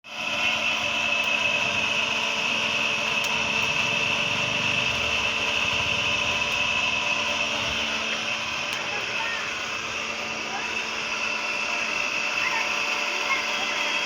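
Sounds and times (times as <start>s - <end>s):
small motor whining: 0.1s - 14.0s.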